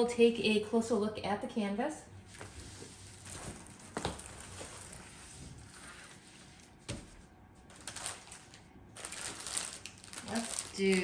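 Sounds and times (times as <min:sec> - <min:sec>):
plastic packaging rustling: 0:02.3 - 0:11.0.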